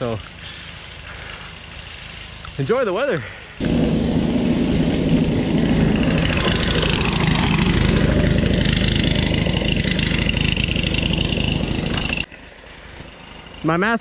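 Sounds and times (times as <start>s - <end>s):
skates rolling on rough trail: 0.0s - 13.6s.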